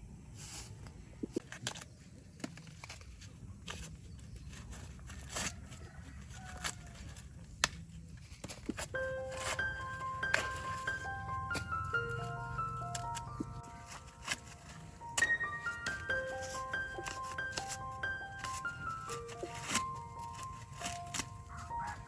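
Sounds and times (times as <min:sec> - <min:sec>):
soft chiming music: 0:09.0 - 0:22.0.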